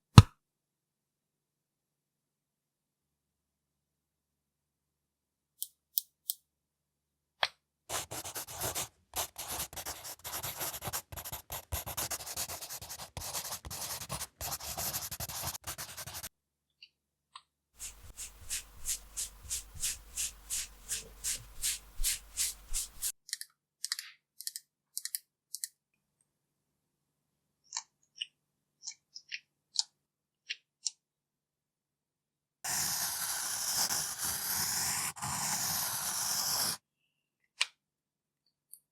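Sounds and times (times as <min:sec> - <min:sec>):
brush strokes: 0:07.9 - 0:16.3, 0:17.8 - 0:23.2, 0:32.7 - 0:36.8
makeup tool scratching and rubbing: 0:07.9 - 0:16.3, 0:17.8 - 0:23.2, 0:32.7 - 0:36.8.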